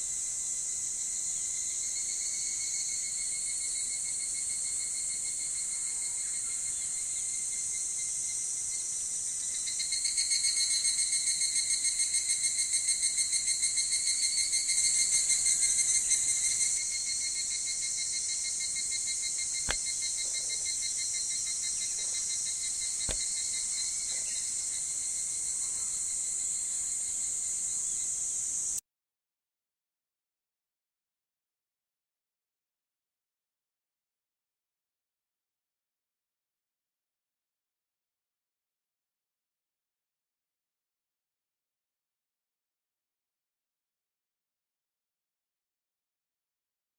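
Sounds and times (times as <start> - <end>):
cicada rapidly pulsing call: 0.0 - 28.8
cicadas chorus: 0.0 - 28.8.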